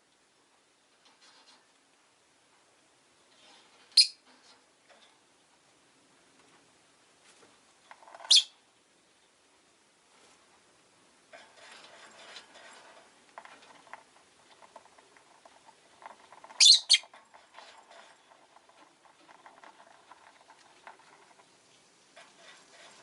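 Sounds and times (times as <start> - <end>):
rustling: 0.8 - 8.3, 10.0 - 23.0
lovebird shrill chirps: 4.0 - 4.2, 8.3 - 8.5, 16.6 - 17.0
soft scratchy chatter: 11.3 - 23.0.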